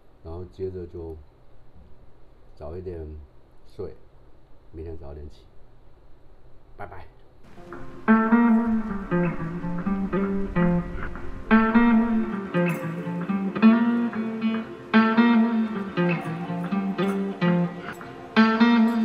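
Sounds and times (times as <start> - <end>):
guitar strumming chords: 7.5 - 19.0.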